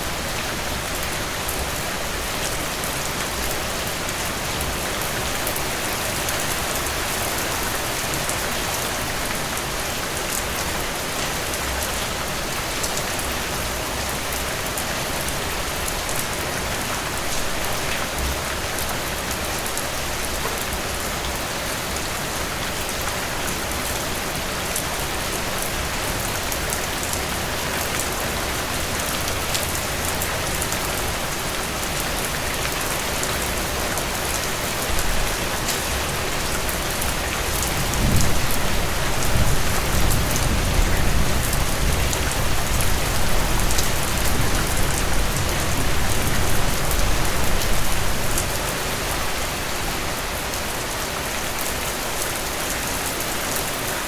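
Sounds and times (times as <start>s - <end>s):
heavy rain: 0.0s - 54.0s
rolling thunder: 37.6s - 47.2s.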